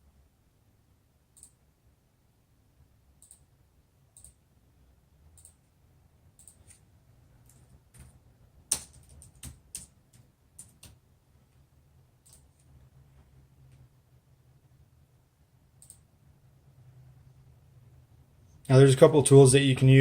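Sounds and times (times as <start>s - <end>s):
mouse and keyboard clicks: 1.4s - 1.6s, 3.2s - 3.5s, 4.2s - 4.4s, 5.4s - 5.6s, 6.4s - 6.8s, 12.2s - 12.7s, 15.8s - 16.1s.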